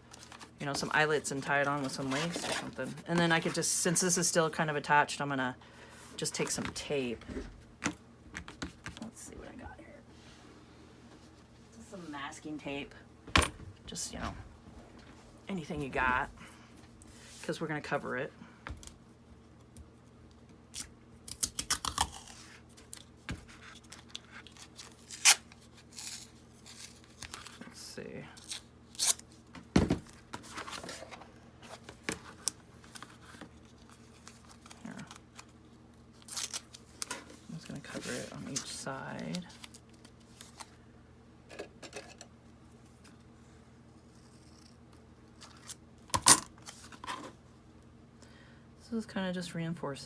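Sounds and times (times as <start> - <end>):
masking tape ripping: 25.0 - 27.4.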